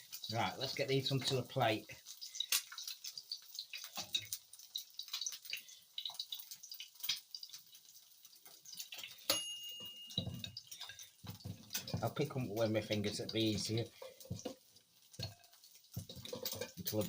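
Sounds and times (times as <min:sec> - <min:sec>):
fat sizzling in a frying pan: 0:00.0 - 0:17.0
sharp clink: 0:09.3 - 0:10.5.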